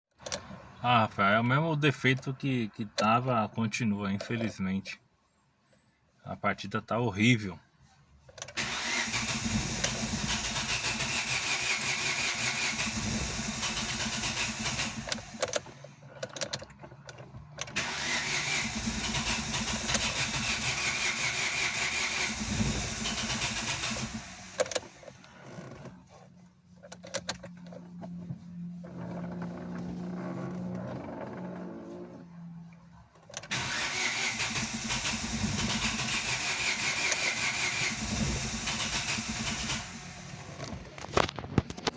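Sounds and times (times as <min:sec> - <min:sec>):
car starter motor cranking: 0:08.4 - 0:26.1, 0:28.8 - 0:32.3, 0:33.2 - 0:41.9.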